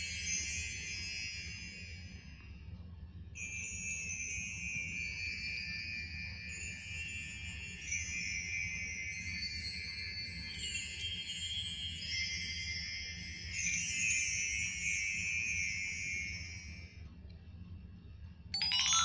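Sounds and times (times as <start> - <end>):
twinkling chimes: 18.6 - 19.0.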